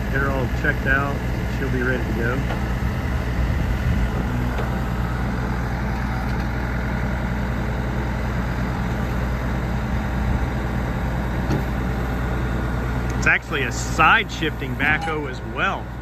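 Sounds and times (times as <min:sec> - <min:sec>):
backhoe diesel engine running: 0:00.0 - 0:16.0.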